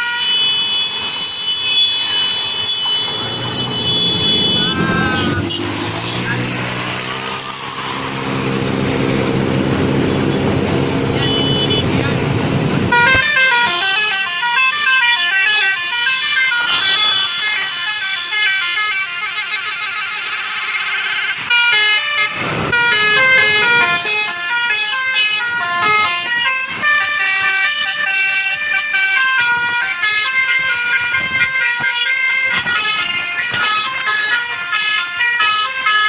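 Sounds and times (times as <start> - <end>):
multi-tone bus air horn melody: 0.0 - 36.0.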